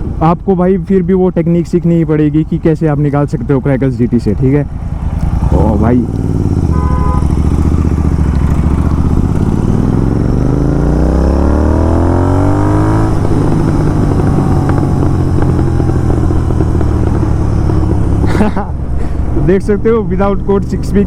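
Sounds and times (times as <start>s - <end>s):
motorcycle engine revving: 4.7s - 21.0s
exhaust crackles: 5.0s - 21.0s.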